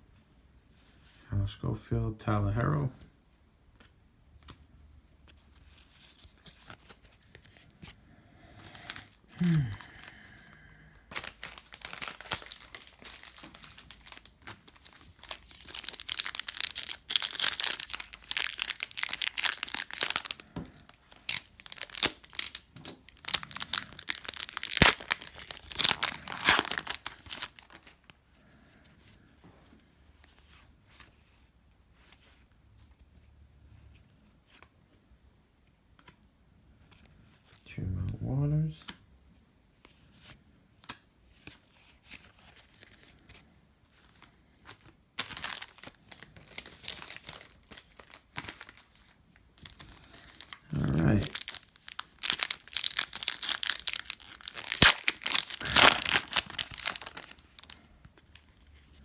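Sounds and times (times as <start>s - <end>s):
plastic wrapper crinkling: 8.6s - 28.2s, 42.0s - 59.0s.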